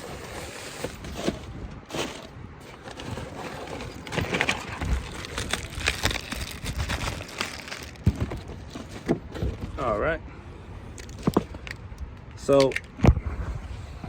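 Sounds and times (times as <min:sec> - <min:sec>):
handling knocks clicks and rustles: 0:00.8 - 0:10.0, 0:11.0 - 0:13.0.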